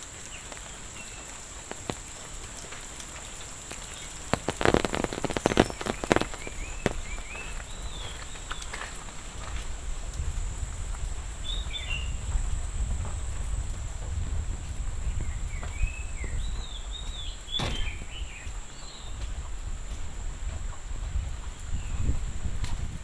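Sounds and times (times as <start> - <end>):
birds chirping: 3.2 - 9.4, 15.0 - 19.6
sharp click: 17.6 - 18.2.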